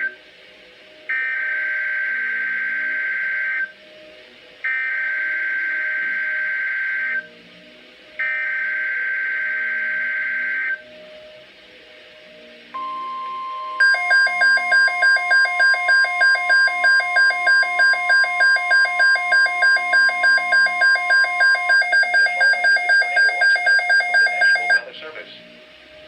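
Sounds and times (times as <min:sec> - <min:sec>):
electronic alarm beeping: 0:12.8 - 0:24.8
steady warning tone: 0:12.8 - 0:24.8.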